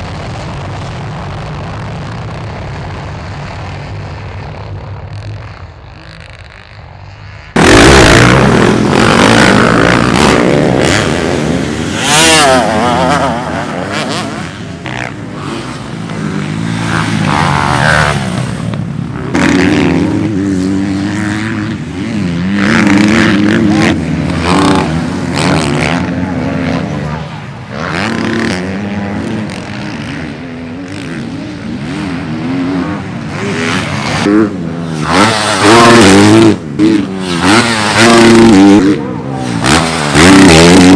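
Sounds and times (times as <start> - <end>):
dirt bike engines revving: 0.0 - 40.9.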